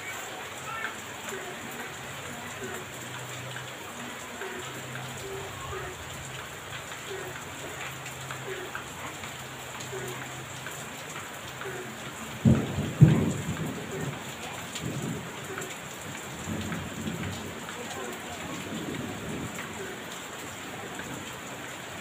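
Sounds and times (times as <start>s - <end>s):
heavy rain falling: 0.0s - 22.0s
thunder cracking and rumbling: 12.2s - 17.7s, 18.4s - 19.7s.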